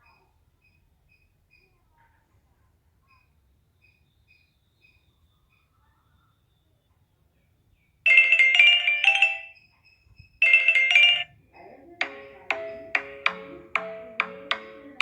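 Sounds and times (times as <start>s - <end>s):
bright chime ringtone: 8.1s - 9.6s, 10.4s - 11.3s
wood-block ringtone: 8.1s - 9.6s, 10.4s - 11.3s, 12.0s - 15.0s.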